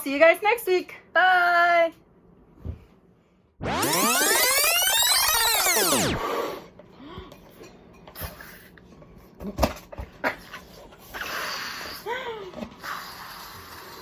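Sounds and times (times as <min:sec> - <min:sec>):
balloon squeak rising and falling: 0:03.6 - 0:06.6.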